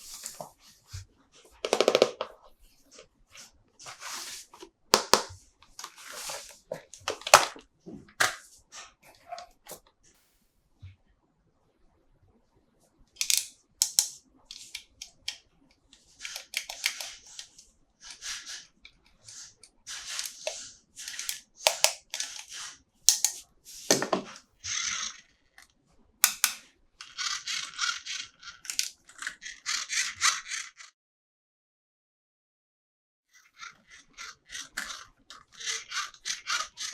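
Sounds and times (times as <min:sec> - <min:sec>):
toy packaging rustling: 0:01.4 - 0:08.9, 0:26.2 - 0:30.9, 0:33.6 - 0:36.9.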